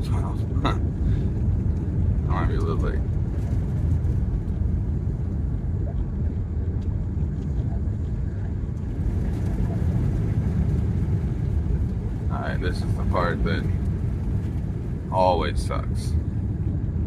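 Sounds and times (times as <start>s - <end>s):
off-road vehicle rumbling: 0.0s - 17.0s.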